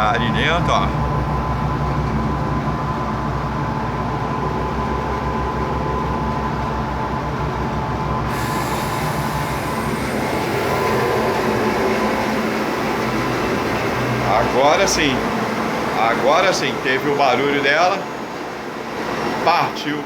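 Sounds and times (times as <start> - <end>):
ice cream machine motors humming: 8.2 - 15.9
high hiss: 8.3 - 13.9.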